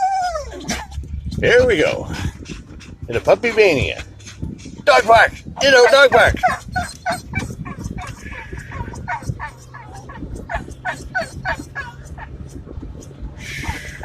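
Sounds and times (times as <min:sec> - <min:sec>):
dog yelping: 0:00.0 - 0:00.9, 0:05.6 - 0:12.6
car hum: 0:00.0 - 0:14.0.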